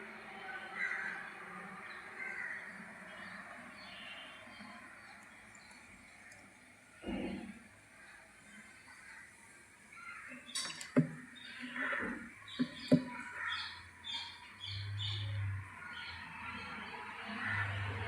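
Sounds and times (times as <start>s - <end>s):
birds chirping: 0.8s - 18.0s.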